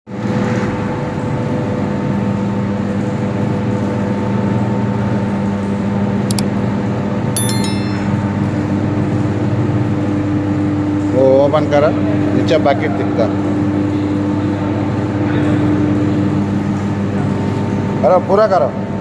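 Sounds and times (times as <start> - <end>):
metallic clinks: 7.4 - 8.2.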